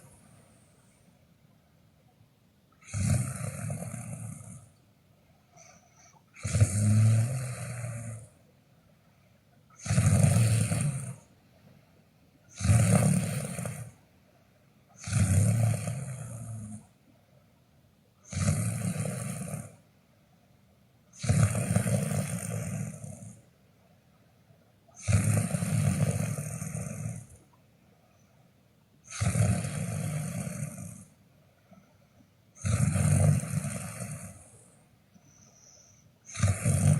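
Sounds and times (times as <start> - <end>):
person snoring: 2.8 - 4.7, 6.4 - 8.3, 9.8 - 11.2, 12.5 - 14.0, 15.0 - 16.9, 18.2 - 19.8, 21.2 - 23.4, 25.0 - 27.3, 29.1 - 31.1, 32.6 - 34.6, 36.2 - 36.9.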